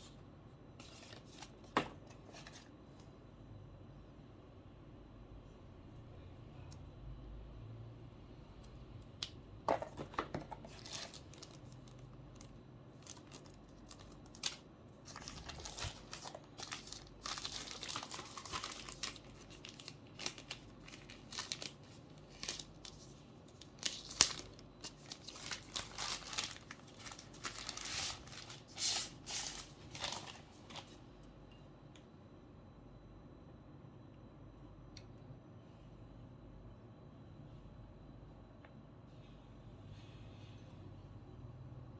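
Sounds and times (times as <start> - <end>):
packaging crinkling and tearing: 10.4 - 31.0.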